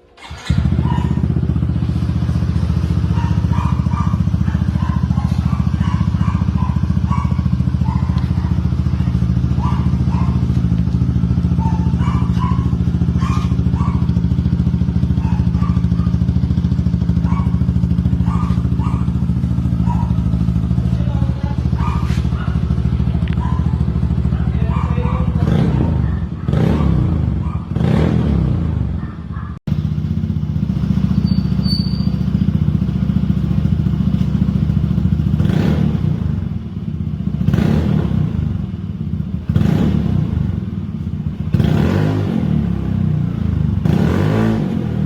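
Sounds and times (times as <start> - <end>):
scooter engine idling: 0.0 - 27.8, 28.4 - 45.0.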